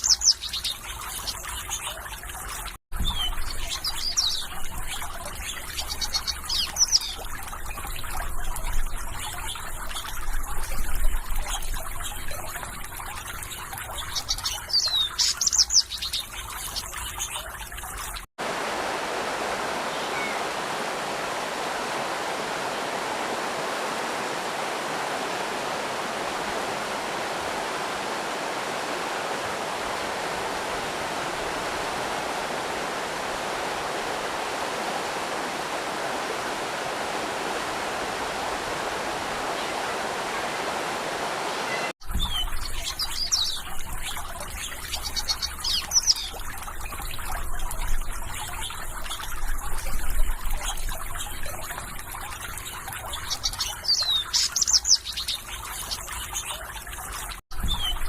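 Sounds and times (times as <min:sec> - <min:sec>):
small birds chirping: 0:00.0 - 0:10.2, 0:13.4 - 0:18.0, 0:19.8 - 0:20.7, 0:24.4 - 0:46.5, 0:52.4 - 0:58.0
trickling splashing stream water: 0:00.0 - 0:58.0
waterfall rushing: 0:18.4 - 0:42.0.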